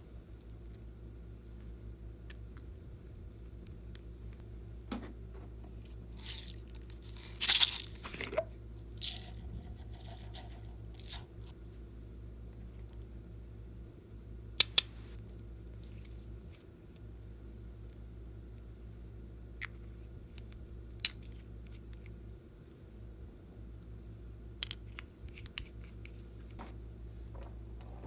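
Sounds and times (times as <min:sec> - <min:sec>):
slime crinkling and rustling: 0:06.1 - 0:08.4.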